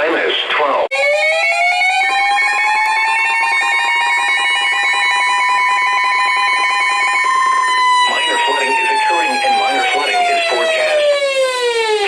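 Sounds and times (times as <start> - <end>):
steady high tone: 2.7 - 12.0.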